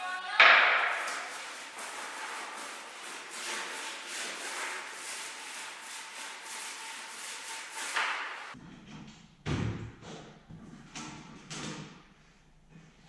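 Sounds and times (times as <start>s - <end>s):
abrasive rubbing strokes: 0.0s - 8.6s.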